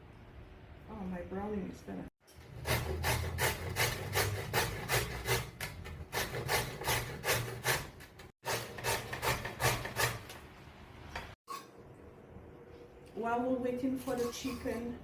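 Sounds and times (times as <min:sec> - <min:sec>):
spoon scraping bottom of pot: 0:14.1 - 0:14.9.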